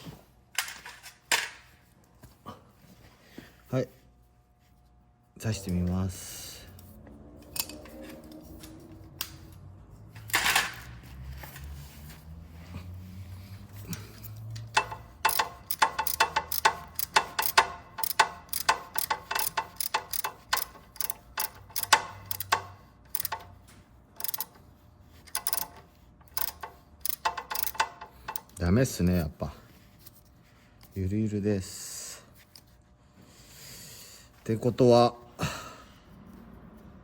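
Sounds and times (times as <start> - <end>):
ratchet wrench clicking: 13.9 - 23.6, 24.2 - 24.6, 25.2 - 28.6.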